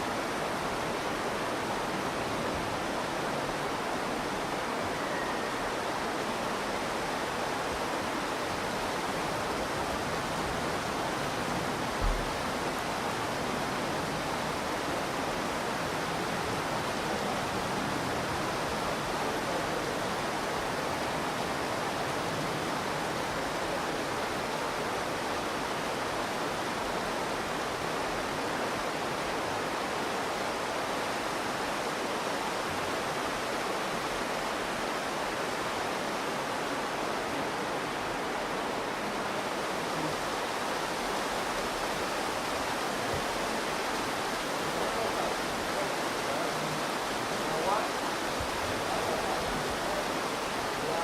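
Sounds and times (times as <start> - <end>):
river water rushing: 0.0 - 51.0.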